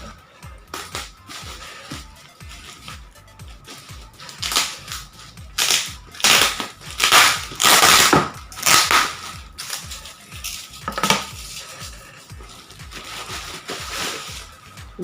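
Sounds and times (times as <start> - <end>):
plastic wrap crinkling: 3.6 - 14.7.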